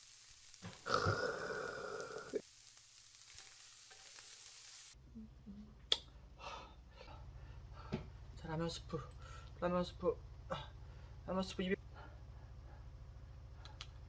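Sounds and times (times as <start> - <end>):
frogs sizzling in a pan: 0.0 - 5.0.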